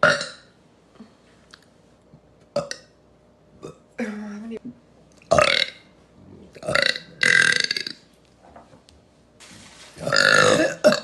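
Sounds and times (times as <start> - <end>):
woman burping: 0.0 - 0.5, 5.3 - 5.8, 6.5 - 8.0, 10.0 - 11.0.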